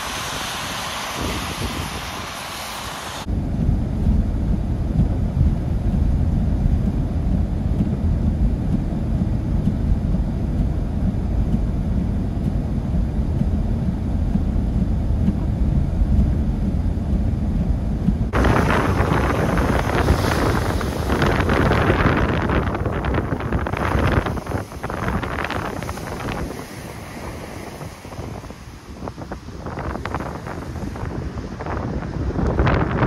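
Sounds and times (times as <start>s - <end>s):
bright rushing hiss: 0.0s - 3.3s, 18.3s - 31.7s
wind buffeting microphone: 0.0s - 33.0s.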